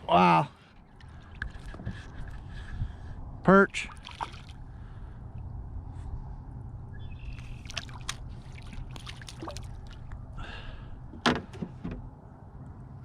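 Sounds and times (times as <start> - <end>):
water trickling and lapping: 0.0 - 6.4, 7.1 - 11.7
low rumble: 4.5 - 11.2.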